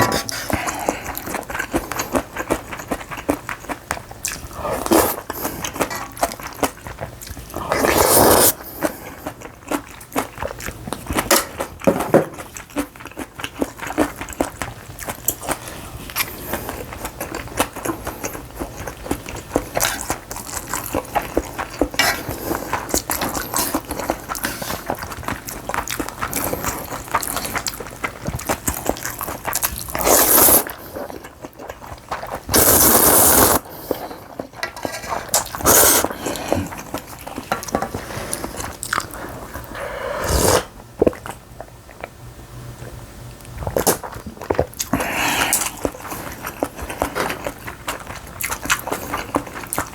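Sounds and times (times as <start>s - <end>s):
chewing with wet clicks: 0.3s - 39.8s, 41.0s - 49.9s
loud slurps: 7.6s - 8.9s, 30.0s - 30.9s, 32.5s - 34.3s, 35.5s - 36.9s, 38.0s - 40.8s.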